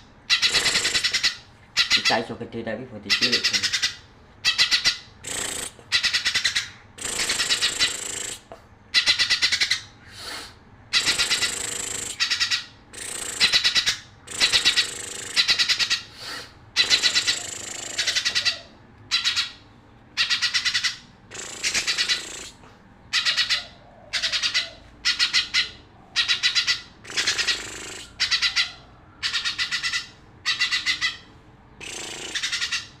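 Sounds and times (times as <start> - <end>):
bird singing chattering phrases: 0.0 - 2.4, 3.0 - 33.0.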